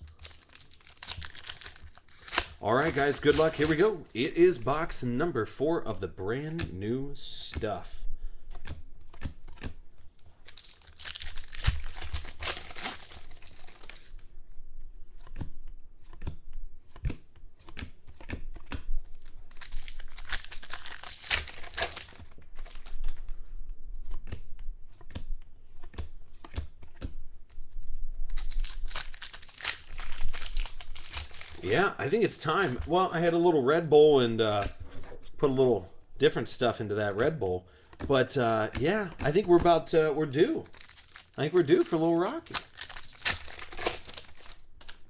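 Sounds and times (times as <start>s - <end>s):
packaging torn and crinkled: 0.0s - 4.9s, 10.4s - 14.2s, 19.1s - 23.2s, 28.3s - 33.0s, 40.4s - 45.0s.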